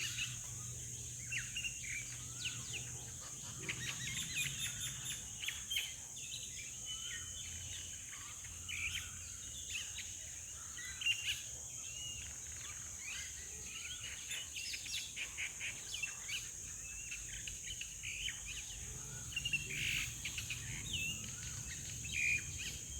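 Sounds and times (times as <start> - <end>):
birds chirping and calling: 0.0 - 5.8, 17.2 - 22.9
high insect drone: 16.7 - 22.9.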